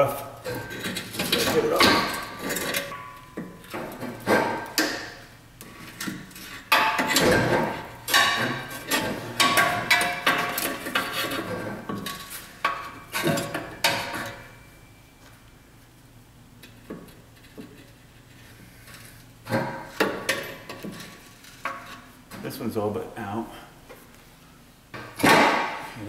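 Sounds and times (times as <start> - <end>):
metal exhaust pipe clanking: 0.4 - 5.3.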